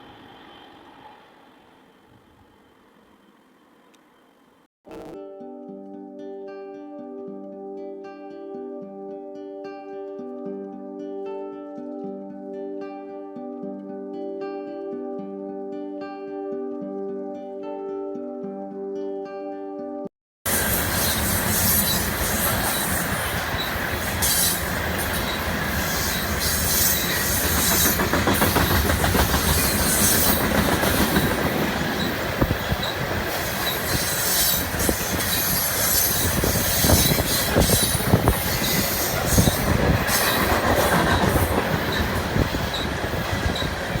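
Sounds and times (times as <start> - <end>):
train wheels rumbling on rail: 20.5 - 44.0.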